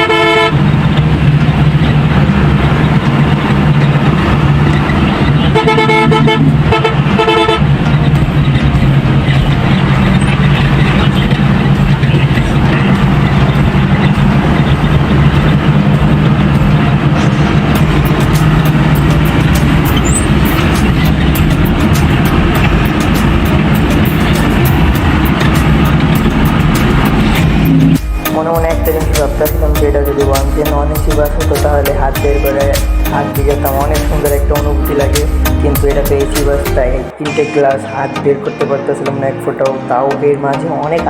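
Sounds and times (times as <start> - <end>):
tyre noise on wet road: 0.0 - 28.0
bus horn blasts: 0.0 - 28.8
bus engine drone: 0.0 - 41.0.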